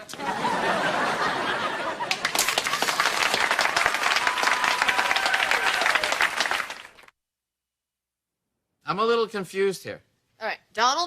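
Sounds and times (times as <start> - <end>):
audience applauding and cheering: 0.4 - 7.1.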